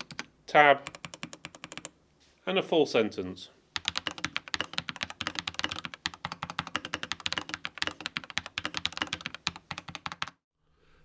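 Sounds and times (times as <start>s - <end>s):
mechanical keyboard typing: 0.0s - 2.0s, 3.8s - 10.4s.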